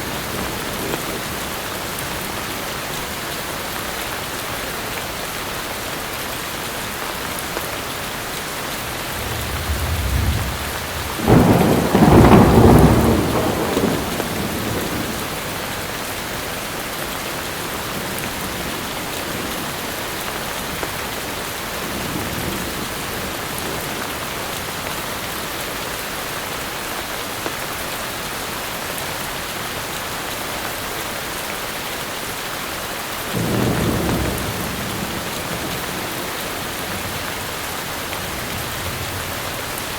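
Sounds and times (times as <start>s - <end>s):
heavy rain: 0.0s - 39.9s
thunder rumbling: 8.8s - 15.6s.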